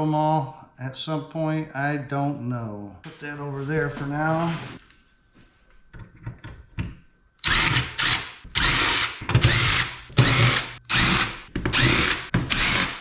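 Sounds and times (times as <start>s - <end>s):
power drill motor whine: 7.4s - 13.0s.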